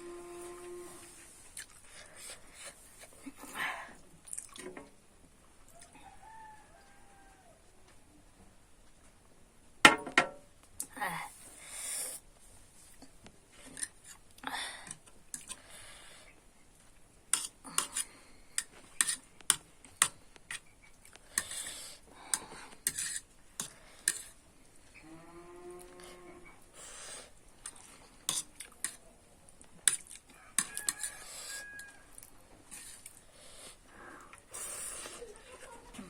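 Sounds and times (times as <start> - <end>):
soft eating noises: 0.0 - 9.3, 10.6 - 36.0
metal utensil scraping a plate: 17.3 - 19.2, 22.8 - 24.4, 30.6 - 31.6.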